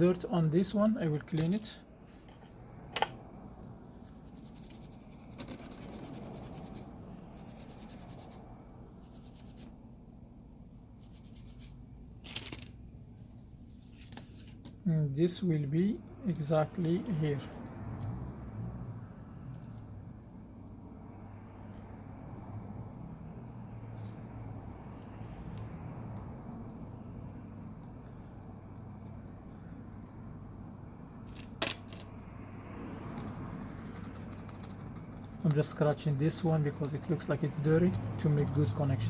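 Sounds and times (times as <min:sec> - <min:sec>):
low background hum: 0:00.0 - 0:39.0
small tool scratching phone: 0:03.9 - 0:08.4, 0:09.0 - 0:09.7, 0:10.8 - 0:11.8, 0:33.1 - 0:39.0.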